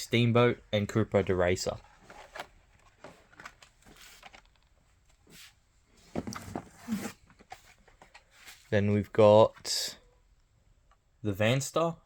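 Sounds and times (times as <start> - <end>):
cardboard packaging rustling: 1.7 - 8.7.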